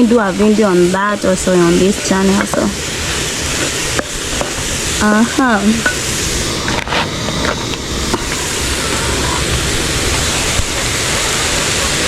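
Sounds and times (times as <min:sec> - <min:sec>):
greens sizzling in a pan: 0:00.0 - 0:12.0
stirring clicks: 0:01.9 - 0:08.5.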